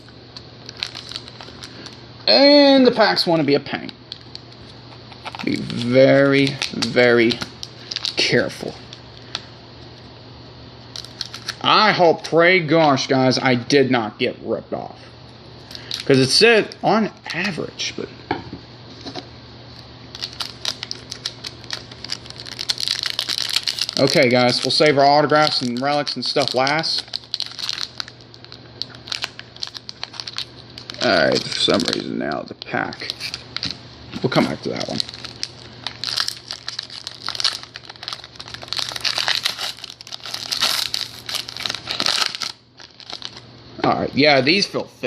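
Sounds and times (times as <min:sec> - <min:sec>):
wrappers crinkling: 0:00.6 - 0:02.0, 0:04.1 - 0:09.4, 0:10.9 - 0:11.6, 0:20.1 - 0:43.4.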